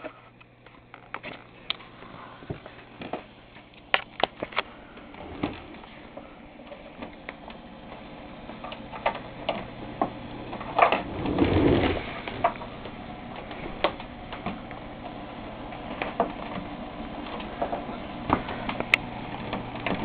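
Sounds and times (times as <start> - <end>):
faint steady hum: 0.0 - 20.0
tv crackling clicks: 3.0 - 4.7.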